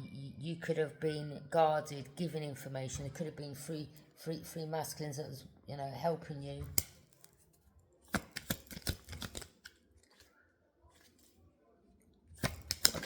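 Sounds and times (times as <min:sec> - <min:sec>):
cards rustling: 0:06.8 - 0:10.4, 0:12.4 - 0:13.0
cards clicking and tapping: 0:08.1 - 0:10.3, 0:12.4 - 0:13.0.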